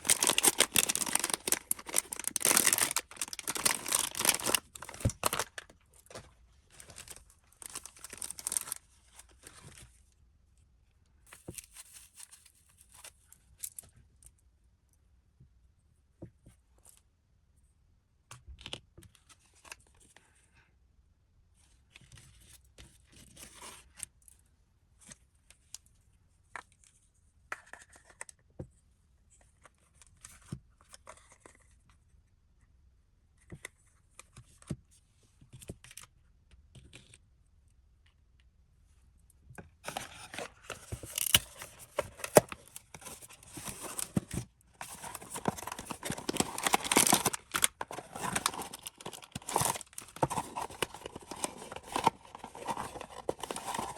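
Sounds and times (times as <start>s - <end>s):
packaging tearing and rustling: 0.0s - 6.2s, 6.8s - 8.8s, 39.9s - 53.9s.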